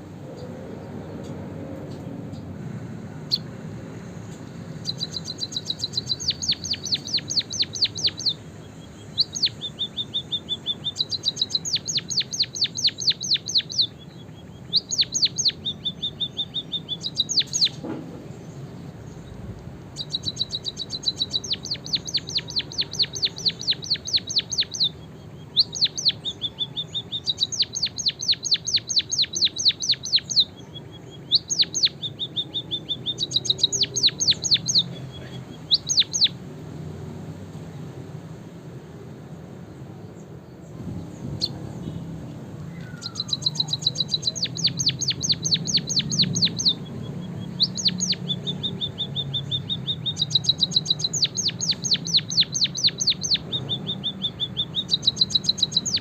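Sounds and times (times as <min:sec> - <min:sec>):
songbird singing rapid high chirps: 0:00.0 - 0:56.0.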